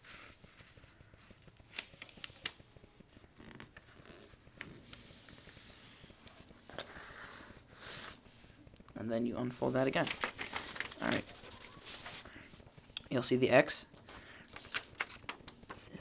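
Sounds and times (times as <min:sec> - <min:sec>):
paper being folded and creased: 0:00.0 - 0:06.6, 0:09.6 - 0:12.4, 0:14.1 - 0:16.0.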